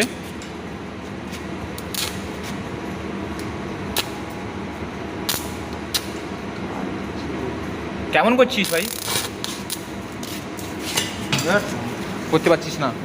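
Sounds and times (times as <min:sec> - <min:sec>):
low electrical hum: 0:00.0 - 0:13.0
welding arc pops and crackles: 0:01.7 - 0:02.3, 0:03.4 - 0:04.2, 0:05.2 - 0:06.3, 0:08.6 - 0:10.8
arc welding hiss: 0:08.6 - 0:10.8.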